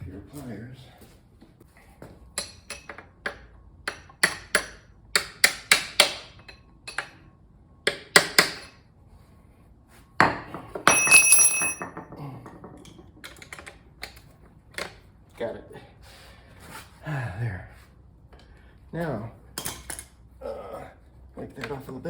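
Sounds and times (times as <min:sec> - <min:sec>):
metal knocks and clink: 0:02.3 - 0:08.8, 0:10.2 - 0:14.2.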